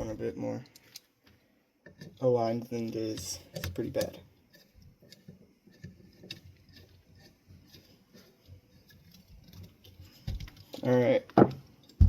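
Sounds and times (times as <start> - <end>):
light clicks and taps on fan housing: 1.8 - 4.2.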